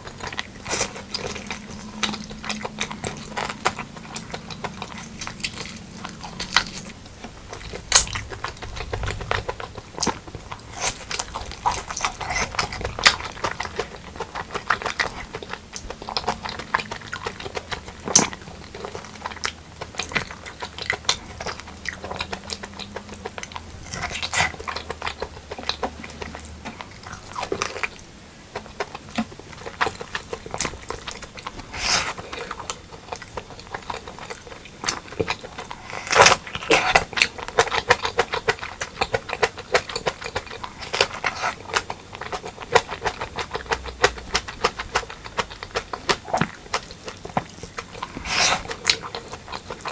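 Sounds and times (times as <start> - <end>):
person chewing and biting: 0.0 - 49.9.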